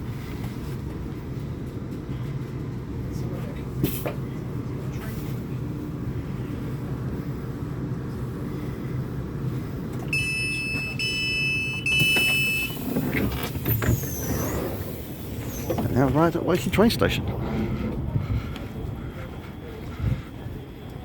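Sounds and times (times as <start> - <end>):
train carriage rumbling: 0.0 - 21.0
door warning tone beeps: 10.0 - 14.6.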